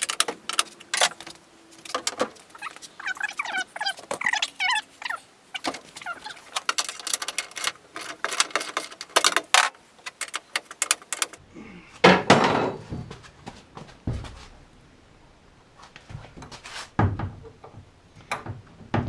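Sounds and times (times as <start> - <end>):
car door hinges creaking: 0.0 - 11.4
sharp metallic clicks and knocks: 0.0 - 11.4.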